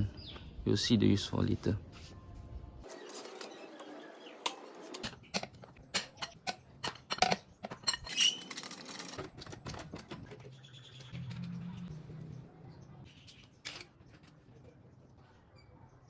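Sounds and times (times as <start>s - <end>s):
metal tools clinking: 4.9s - 10.4s.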